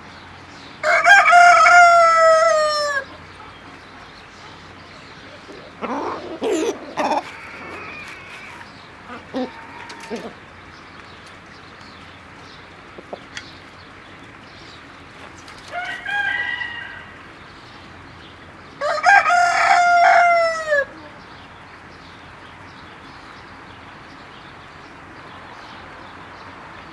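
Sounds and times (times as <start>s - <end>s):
rooster crowing: 0.8s - 3.2s, 5.8s - 10.4s, 15.7s - 17.3s, 18.8s - 21.1s
hens clucking: 0.8s - 11.4s, 12.1s - 13.8s.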